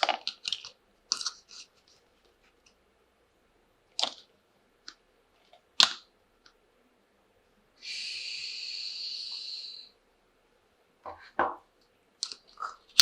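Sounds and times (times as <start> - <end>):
plastic toy parts clicking: 0.0 - 1.5, 12.2 - 13.0
steady hiss: 6.6 - 11.0.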